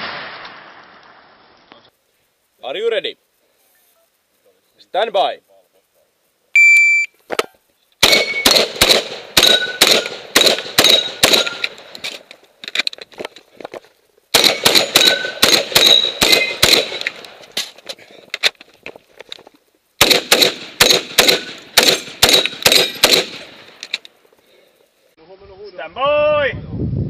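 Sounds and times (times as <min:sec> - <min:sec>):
shot timer beep: 0:06.6 - 0:07.1
shotgun firing rapidly: 0:08.0 - 0:11.6, 0:14.4 - 0:17.0, 0:20.0 - 0:23.4
steel targets ringing: 0:09.4 - 0:10.1, 0:10.8 - 0:11.7, 0:14.9 - 0:17.0.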